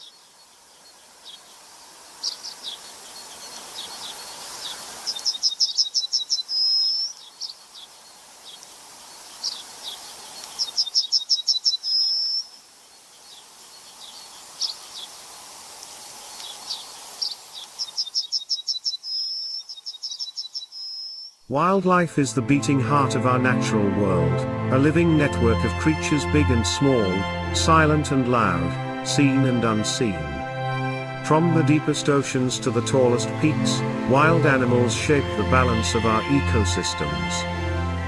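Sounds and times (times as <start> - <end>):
high hiss of insects: 0.0 - 21.5
songbird singing: 0.0 - 38.0
single bird chirps: 3.9 - 7.9, 10.4 - 12.6, 16.4 - 21.4.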